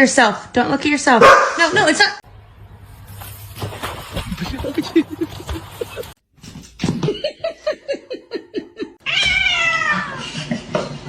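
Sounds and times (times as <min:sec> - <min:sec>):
cat meowing: 0:09.0 - 0:10.2.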